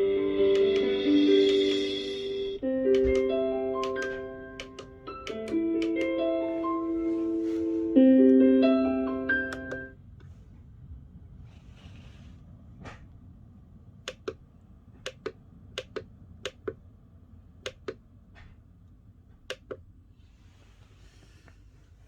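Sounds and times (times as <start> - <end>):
alarm clock button clicks: 2.9 - 6.2, 9.5 - 9.9.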